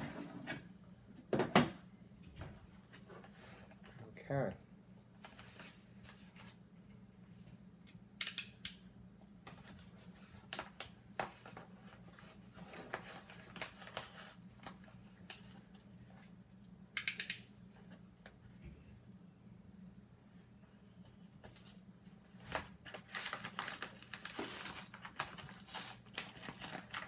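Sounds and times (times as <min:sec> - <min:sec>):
faint steady hum: 0:00.0 - 0:27.0
packaging rustling and crinkling: 0:09.6 - 0:15.6, 0:21.4 - 0:27.0.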